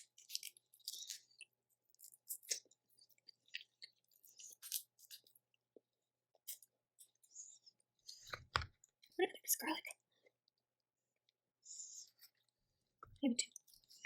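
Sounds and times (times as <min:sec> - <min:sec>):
peeling shellfish shells: 0:00.0 - 0:05.4
chewing: 0:00.0 - 0:09.1.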